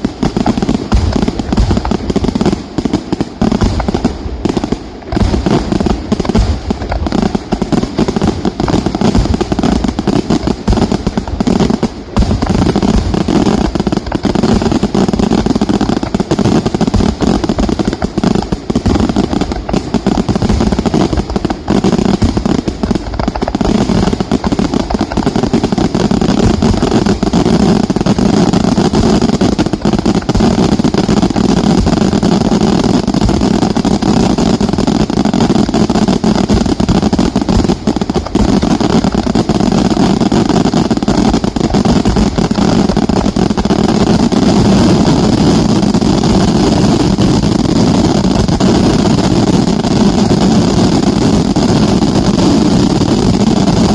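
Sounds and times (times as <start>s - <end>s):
fireworks exploding and crackling: 0.0s - 53.9s.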